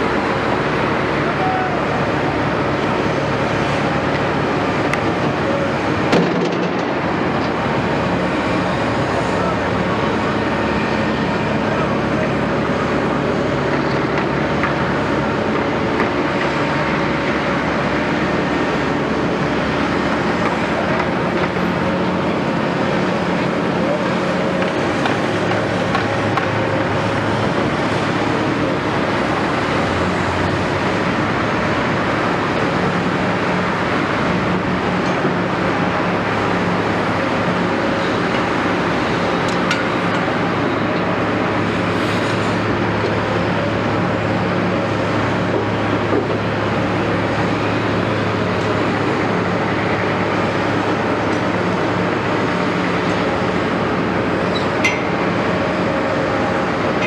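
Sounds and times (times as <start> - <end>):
excavator diesel engine running: 0.0 - 57.0.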